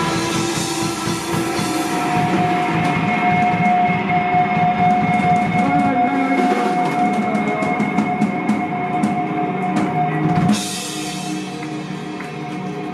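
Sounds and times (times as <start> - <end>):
cymbal crash: 0.0 - 5.6
drum kit strokes: 0.0 - 12.9
live band playing: 0.0 - 12.9.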